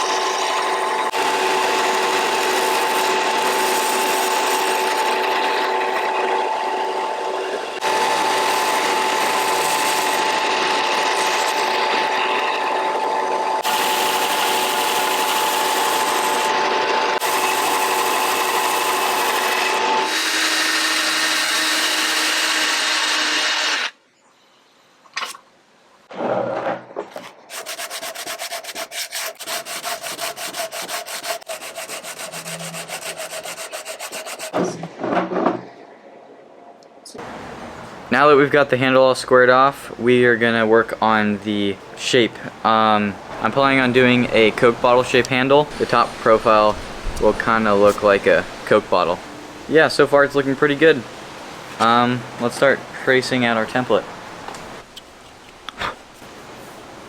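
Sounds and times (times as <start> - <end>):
power sander whining: 0.0 - 23.9, 29.4 - 34.6
rapid sanding strokes: 1.1 - 6.2, 7.8 - 12.2, 13.6 - 16.6, 27.5 - 34.6.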